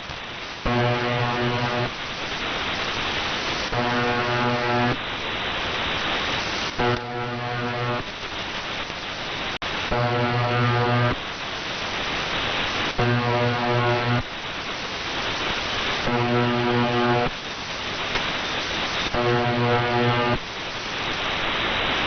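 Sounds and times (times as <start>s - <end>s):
radio static hiss: 0.0s - 22.0s
harsh low buzz tone: 0.7s - 2.0s, 3.7s - 5.0s, 6.7s - 8.1s, 9.9s - 11.2s, 12.9s - 14.3s, 16.0s - 17.3s, 19.0s - 20.4s.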